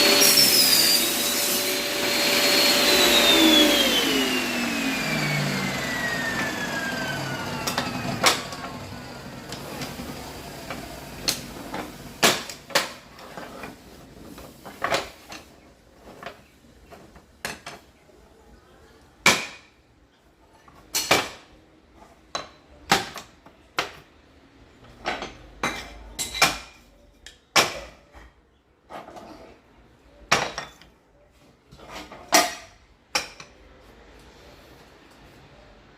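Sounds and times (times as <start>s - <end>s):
table saw whine winding down: 0.0s - 11.3s.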